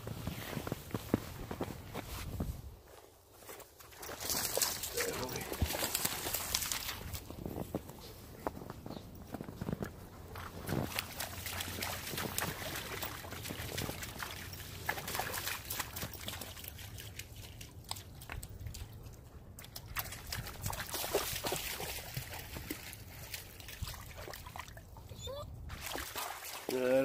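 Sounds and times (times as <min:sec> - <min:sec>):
dogs splashing in shallow water: 0:03.5 - 0:07.8, 0:09.8 - 0:27.0.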